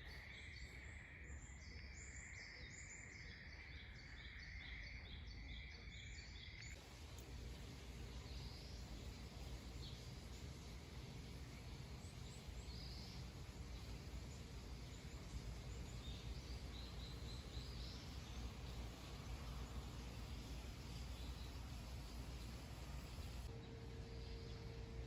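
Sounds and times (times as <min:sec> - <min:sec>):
steady low background hum: 0:06.7 - 0:25.0.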